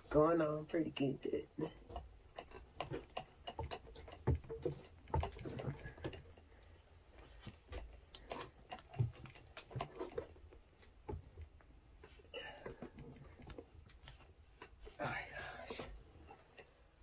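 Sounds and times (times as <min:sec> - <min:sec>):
tyre knocking and rubbing on rim: 0:01.8 - 0:06.4.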